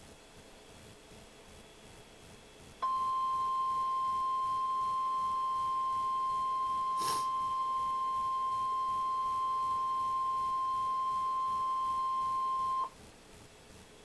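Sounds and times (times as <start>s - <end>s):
faint radio hiss: 0.0s - 14.0s
loud steady high tone: 2.8s - 12.9s.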